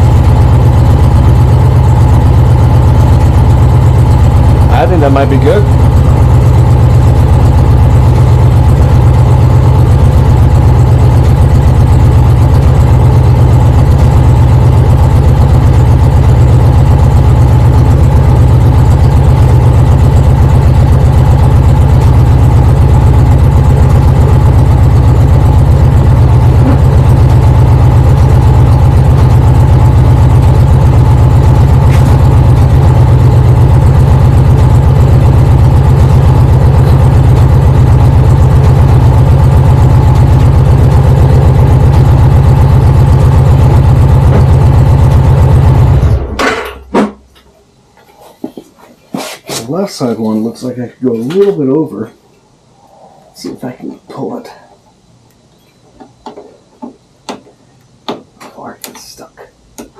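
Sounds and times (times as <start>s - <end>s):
motorcycle engine idling: 0.0s - 47.4s.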